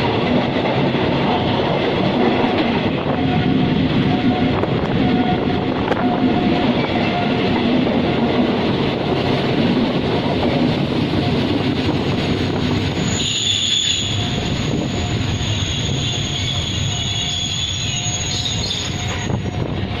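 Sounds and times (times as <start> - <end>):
train wheels rumbling on rails: 0.0 - 20.0
high thin wheel squeal: 13.0 - 19.7.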